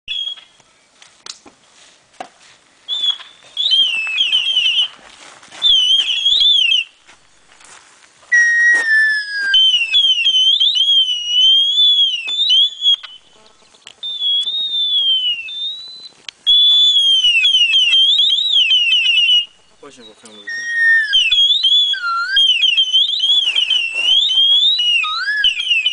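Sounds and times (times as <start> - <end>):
high warbling whistling: 2.9 - 5.0, 5.6 - 7.0, 8.3 - 13.4, 14.0 - 25.9
lower held whistled note: 8.3 - 13.2, 14.0 - 25.9.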